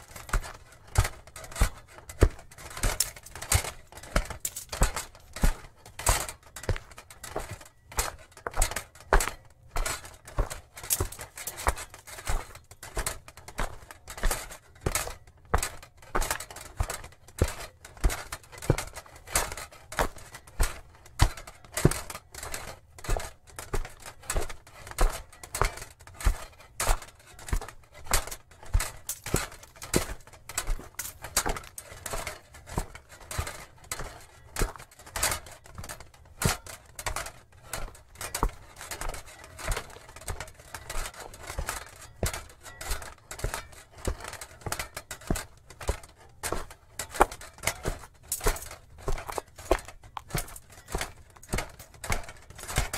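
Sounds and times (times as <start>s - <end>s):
booted footsteps of armoured knight: 0.0s - 52.9s.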